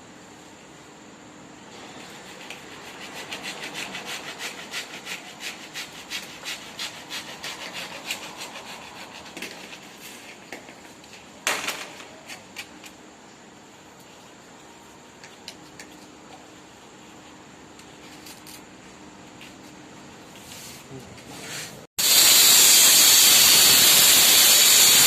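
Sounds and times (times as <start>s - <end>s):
hand saw strokes: 1.8s - 10.4s.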